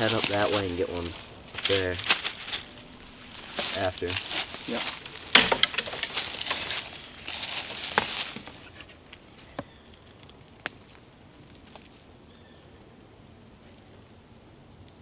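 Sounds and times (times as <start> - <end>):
rustling through brush and leaves: 0.0 - 12.8.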